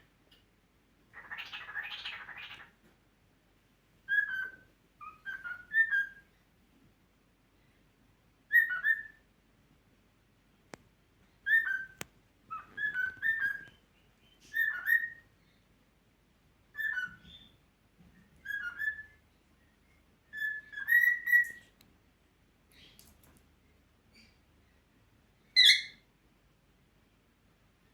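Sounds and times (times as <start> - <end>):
cockatiel whistling: 4.1 - 6.2, 8.5 - 9.2, 11.4 - 13.8, 14.4 - 15.2, 16.8 - 17.5, 18.4 - 19.2, 20.3 - 21.6.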